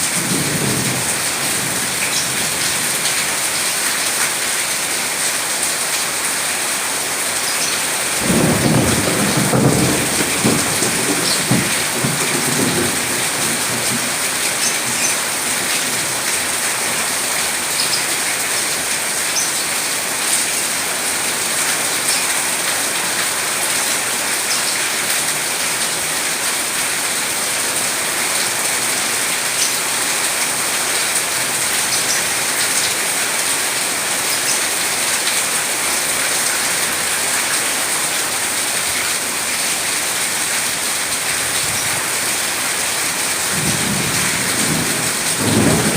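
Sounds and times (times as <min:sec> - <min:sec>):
heavy rain hissing: 0:00.0 - 0:45.9
thunder rumble: 0:08.2 - 0:14.2, 0:43.6 - 0:45.9.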